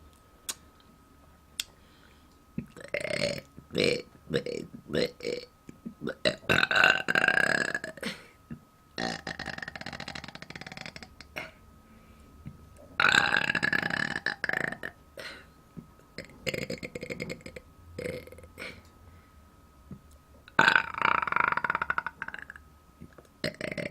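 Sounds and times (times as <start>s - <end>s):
woman burping: 2.6s - 11.6s, 16.2s - 18.9s, 20.5s - 22.6s.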